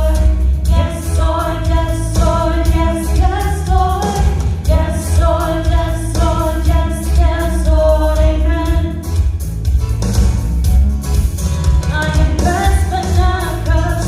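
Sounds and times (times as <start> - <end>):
voices singing worship song: 0.0 - 9.1
band with bass and beat: 0.0 - 14.0.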